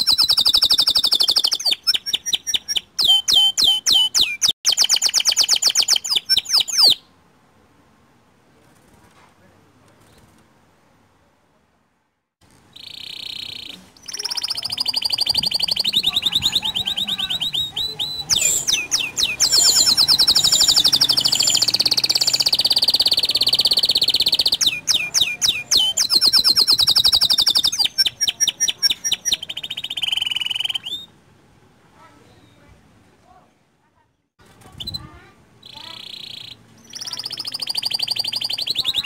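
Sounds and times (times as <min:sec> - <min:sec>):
canary singing trills: 0:00.0 - 0:07.1, 0:12.7 - 0:31.2, 0:34.7 - 0:39.0.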